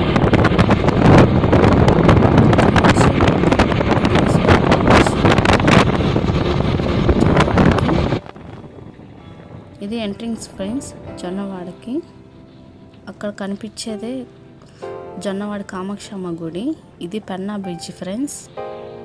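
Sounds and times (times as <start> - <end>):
road noise from moving vehicle: 0.0 - 13.7
wind buffeting microphone: 0.0 - 13.7.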